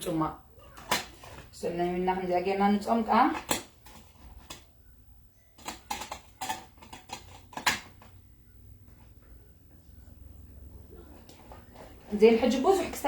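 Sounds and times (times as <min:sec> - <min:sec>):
kitchenware clinking and knocking: 0:05.6 - 0:08.2.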